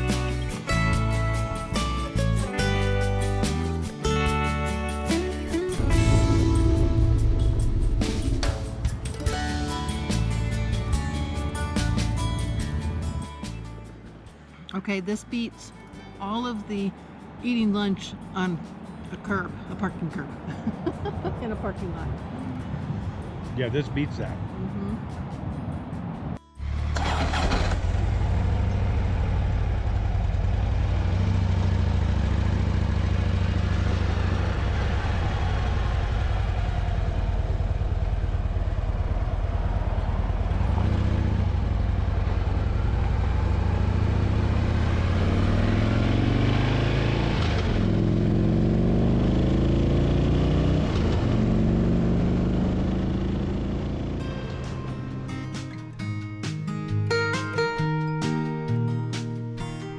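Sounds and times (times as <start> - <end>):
motorcycle engine running: 26.6 - 55.3.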